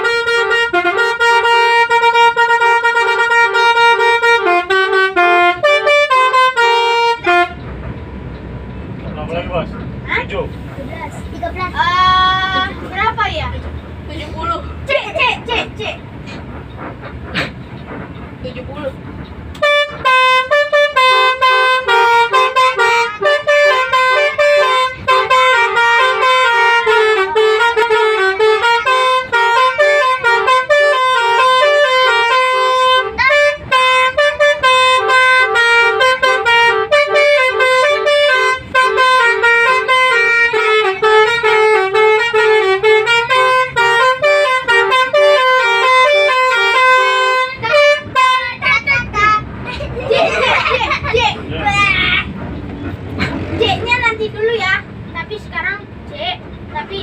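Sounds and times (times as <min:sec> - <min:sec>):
bus horn playing a melody: 0:00.0 - 0:07.7, 0:19.5 - 0:51.2.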